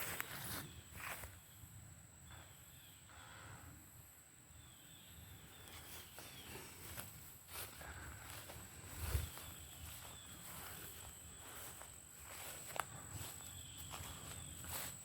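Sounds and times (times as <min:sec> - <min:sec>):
descending bird calls: 0:02.2 - 0:03.8
footsteps on leaf litter: 0:05.9 - 0:15.0.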